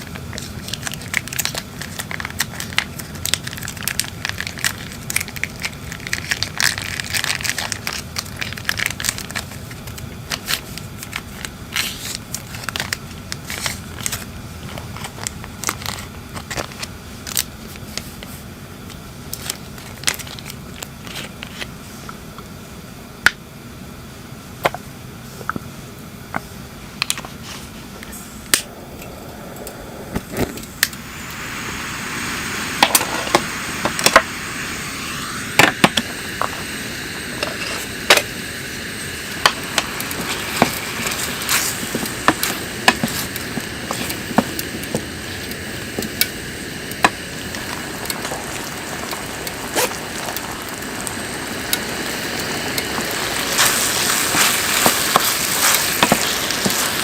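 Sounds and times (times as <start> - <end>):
wood fire crackling and popping: 0.0 - 18.0, 28.5 - 57.0
fire hiss: 27.5 - 57.0.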